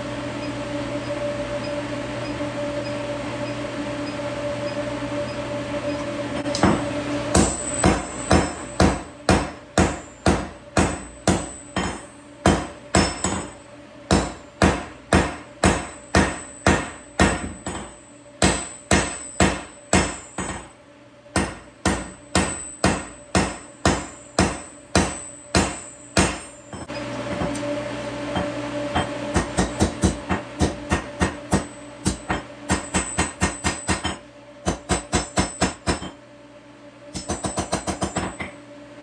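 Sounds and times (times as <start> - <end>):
hammer striking hot steel: 6.5 - 27.6, 28.3 - 36.2, 37.1 - 38.6.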